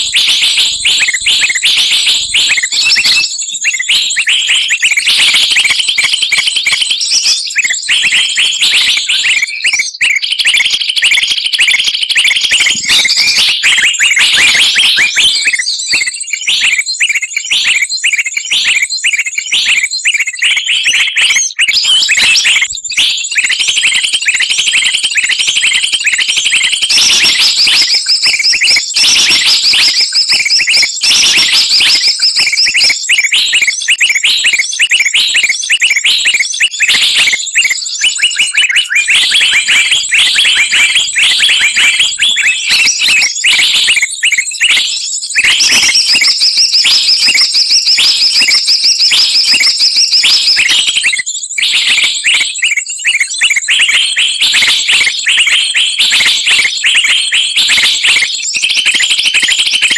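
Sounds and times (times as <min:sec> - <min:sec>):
songbirds chirping and chattering: 0:00.0 - 0:59.9.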